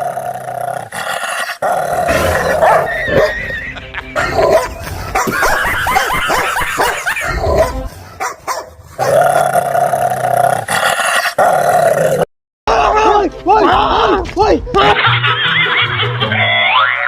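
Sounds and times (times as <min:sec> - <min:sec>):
dog barking and growling: 0:00.0 - 0:03.5, 0:04.2 - 0:12.3
dog yipping: 0:02.6 - 0:03.4.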